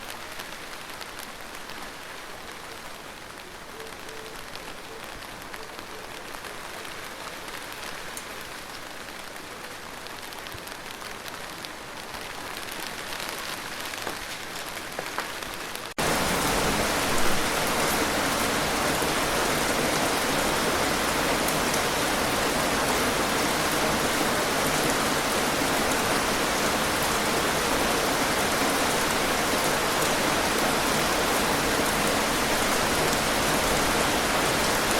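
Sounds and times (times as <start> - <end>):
rain falling: 0.0 - 34.9.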